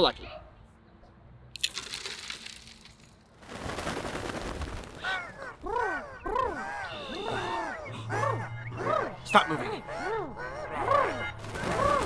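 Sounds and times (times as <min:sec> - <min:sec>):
wings flapping and rustling: 0:01.8 - 0:06.0, 0:11.4 - 0:12.0.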